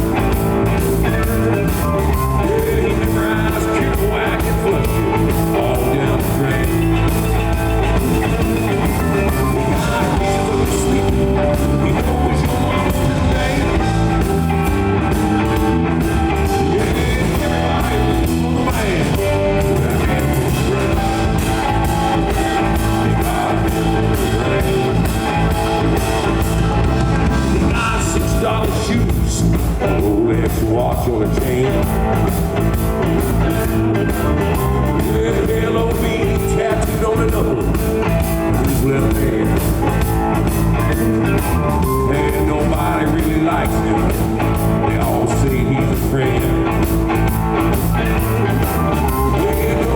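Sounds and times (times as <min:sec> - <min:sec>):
bass guitar: 0:00.0 - 0:49.9
drum kit beat: 0:00.0 - 0:49.9
electric guitar: 0:00.0 - 0:49.9.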